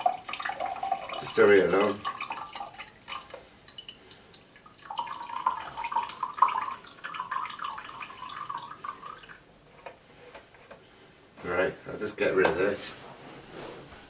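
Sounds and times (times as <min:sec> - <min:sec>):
water trickling into a glass: 0:00.0 - 0:09.4
water dripping: 0:00.0 - 0:09.5.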